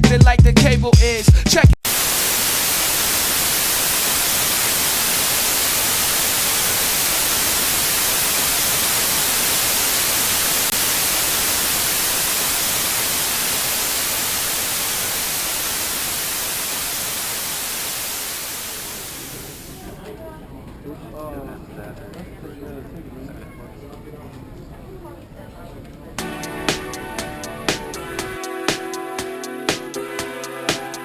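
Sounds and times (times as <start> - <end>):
loud static hiss: 1.8 - 19.8, 26.2 - 31.0.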